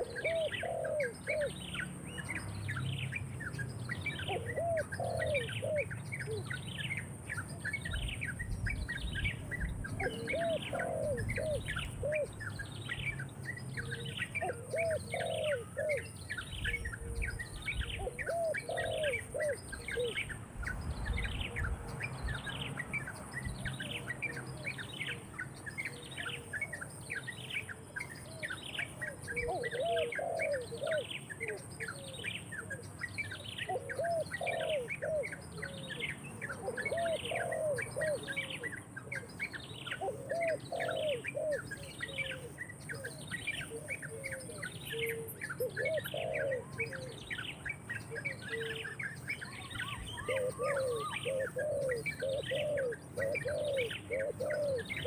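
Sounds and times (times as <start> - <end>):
bird low cooing: 0.0 - 22.8, 23.4 - 55.0
bird high descending call: 48.2 - 55.0.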